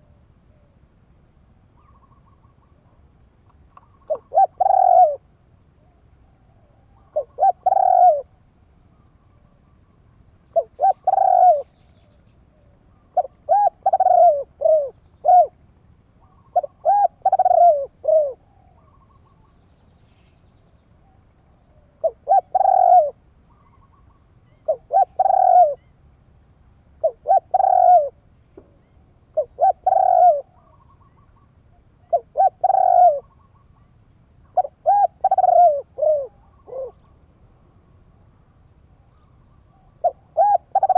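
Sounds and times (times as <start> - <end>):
dove cooing: 3.8 - 8.3, 10.5 - 15.6, 16.2 - 19.5, 21.0 - 25.9, 27.0 - 37.2, 39.1 - 40.9.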